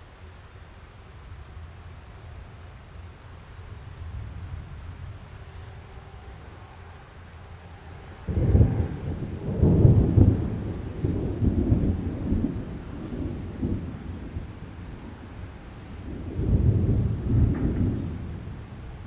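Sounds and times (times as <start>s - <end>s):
rolling thunder: 8.0s - 19.0s.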